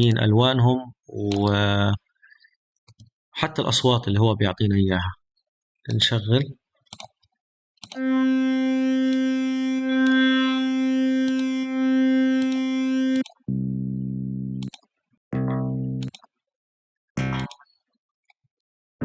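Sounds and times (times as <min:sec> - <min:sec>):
synthesizer held note: 0:08.0 - 0:14.5
low buzzy synthesizer note: 0:08.0 - 0:14.6, 0:15.4 - 0:16.1, 0:17.2 - 0:17.5.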